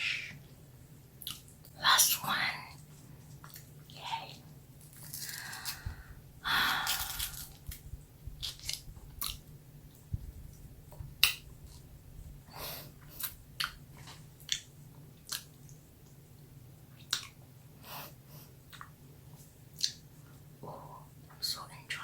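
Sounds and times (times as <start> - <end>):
faint low hum: 0.0 - 22.0
wet mouth clicks and smacks: 1.2 - 1.5, 8.4 - 9.4, 15.3 - 15.5, 17.0 - 17.4, 19.8 - 20.0
close-up chewing: 2.9 - 3.9, 7.0 - 9.5.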